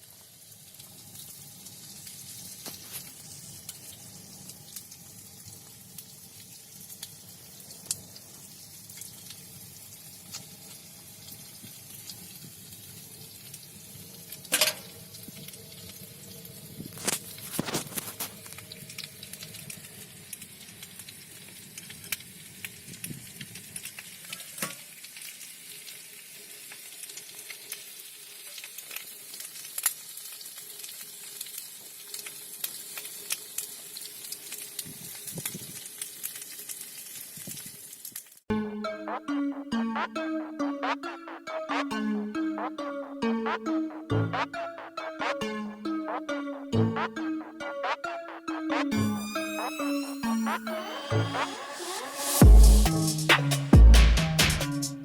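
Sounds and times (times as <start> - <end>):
fish sizzling in a pan: 0.0 - 38.5, 50.5 - 52.4.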